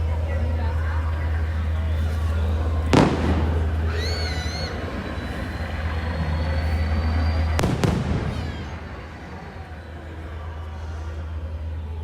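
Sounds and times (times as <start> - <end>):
low rumble: 0.0 - 12.0
fireworks bangs: 2.9 - 6.3, 7.2 - 9.7
warbling firework whistle: 2.9 - 10.4.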